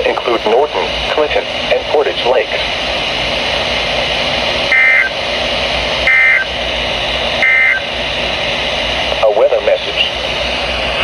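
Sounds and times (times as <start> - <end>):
radio hiss: 0.0 - 11.0
buzzy two-tone data warble: 4.7 - 5.2, 6.0 - 6.5, 7.4 - 7.9.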